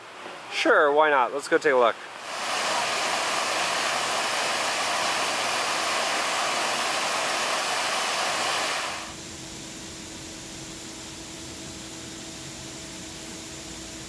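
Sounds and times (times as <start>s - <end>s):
faint steady hum: 0.0s - 14.0s
falling water rushing: 0.6s - 9.1s.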